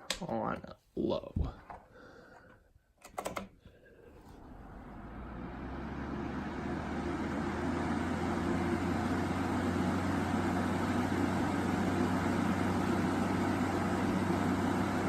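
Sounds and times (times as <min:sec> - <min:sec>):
floor fan motor hum: 0:03.8 - 0:15.0.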